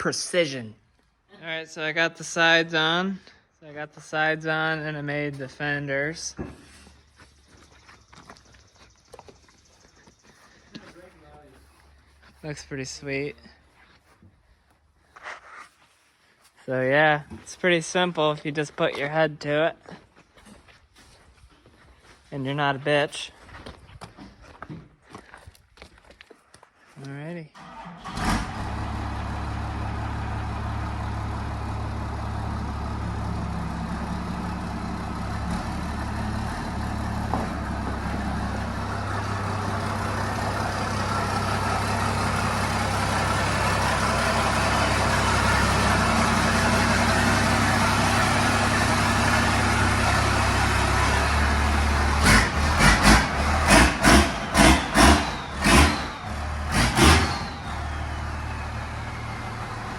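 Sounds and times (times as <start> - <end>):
diesel truck engine running: 27.7 - 59.9
loud engine pulses: 27.7 - 59.9.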